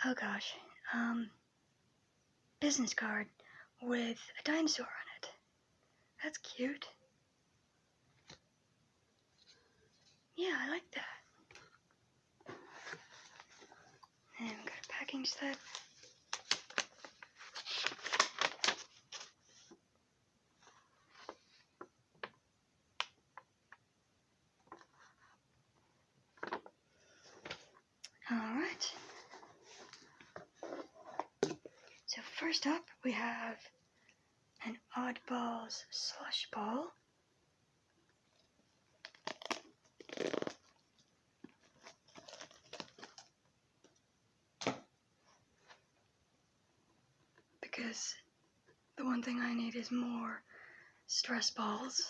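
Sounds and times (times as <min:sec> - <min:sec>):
paper and plastic rustling: 0:14.6 - 0:19.8, 0:41.6 - 0:43.3
packaging crinkling and tearing: 0:15.5 - 0:19.4, 0:39.0 - 0:40.7, 0:41.6 - 0:43.3.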